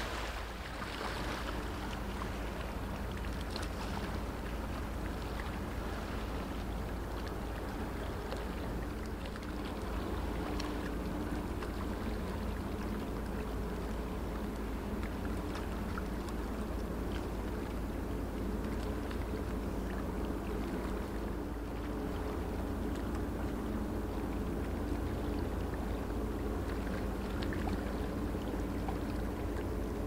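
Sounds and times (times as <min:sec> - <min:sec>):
ship diesel engine drone: 0:00.0 - 0:30.0.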